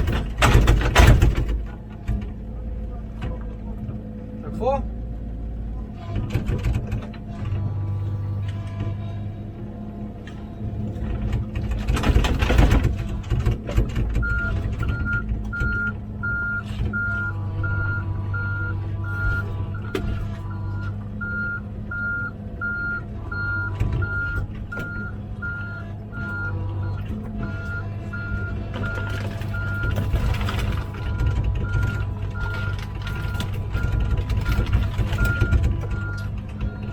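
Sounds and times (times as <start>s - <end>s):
diesel engine running: 0.0s - 36.9s
travel alarm beeping: 14.2s - 36.9s.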